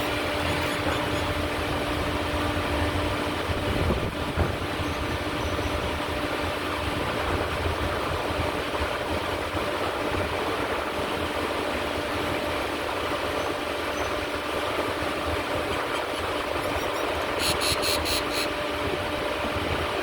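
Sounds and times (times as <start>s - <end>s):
mechanical drone: 0.0s - 5.6s.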